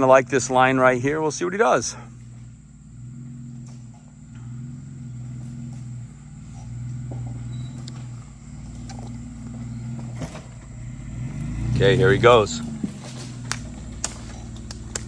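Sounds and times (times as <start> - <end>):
car engine revving low: 0.0 - 15.0.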